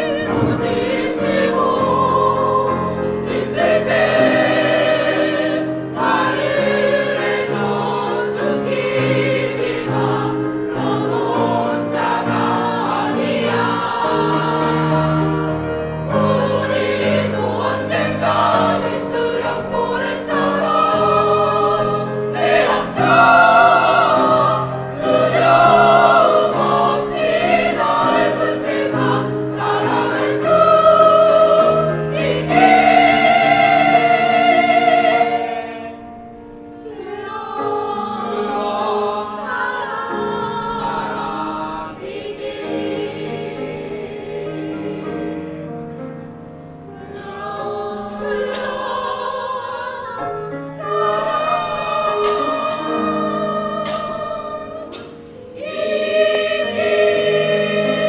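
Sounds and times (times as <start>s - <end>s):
sustained instrumental accompaniment: 0.0s - 37.2s, 50.6s - 58.0s
choir singing: 0.0s - 58.0s.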